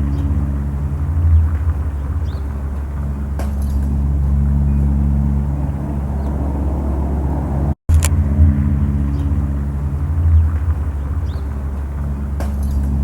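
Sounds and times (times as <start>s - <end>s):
low outdoor drone: 0.0s - 13.0s.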